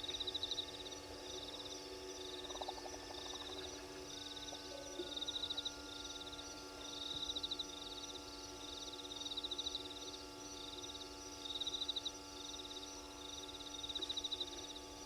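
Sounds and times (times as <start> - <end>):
crickets chirping: 0.0 - 15.0
faint steady hum: 0.0 - 15.0.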